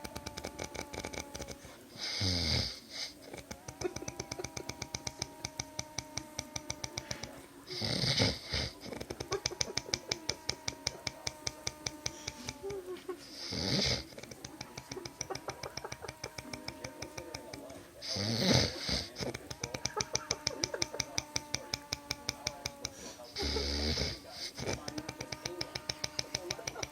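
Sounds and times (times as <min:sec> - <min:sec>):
hissing breath: 0:00.0 - 0:03.6, 0:04.4 - 0:15.4, 0:22.8 - 0:25.4
man snoring: 0:00.0 - 0:12.7, 0:13.3 - 0:26.9.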